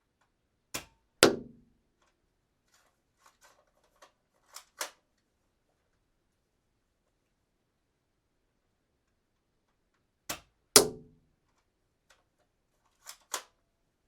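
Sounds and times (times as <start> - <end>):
dart gun shot: 0.8 - 1.6, 10.3 - 11.1.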